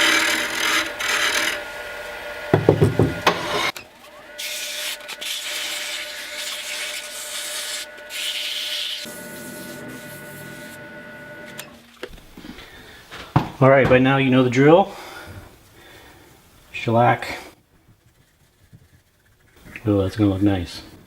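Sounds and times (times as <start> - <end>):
tool rasping on spinning wood: 0.0 - 12.0
wood lathe whine: 0.0 - 12.1
loud knocks: 2.5 - 3.7.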